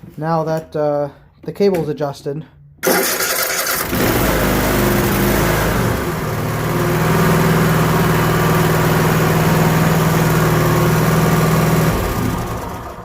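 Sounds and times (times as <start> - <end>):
mower engine running: 2.8 - 13.0.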